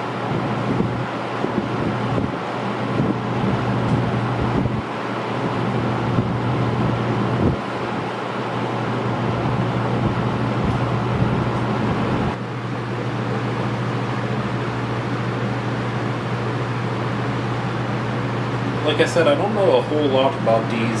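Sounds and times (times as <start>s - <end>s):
box fan running: 0.0s - 21.0s
wind rumble on microphone: 0.2s - 4.9s, 5.5s - 8.1s, 9.1s - 12.4s.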